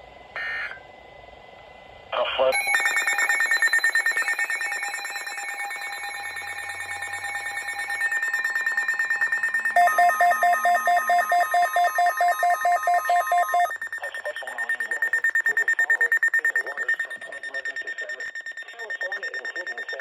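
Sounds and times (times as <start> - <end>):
rhythmic beeping: 2.5 - 20.0
steady alarm tone: 2.5 - 20.0
warbling electronic tone: 2.6 - 18.0.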